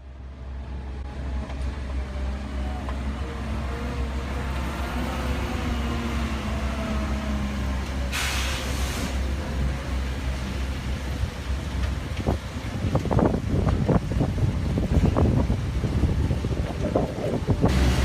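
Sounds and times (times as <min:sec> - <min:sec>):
heavy machinery rumbling: 0:00.1 - 0:18.0
hissing air release: 0:08.1 - 0:09.3.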